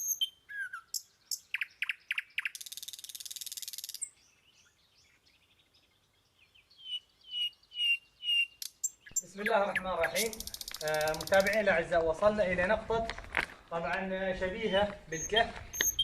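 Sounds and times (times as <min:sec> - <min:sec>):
buzzy bird trill: 0:00.0 - 0:04.8, 0:06.6 - 0:11.8, 0:14.6 - 0:16.0
whistled bird notes: 0:00.0 - 0:11.6, 0:15.1 - 0:16.0
small birds chirping: 0:00.0 - 0:13.0, 0:13.6 - 0:16.0.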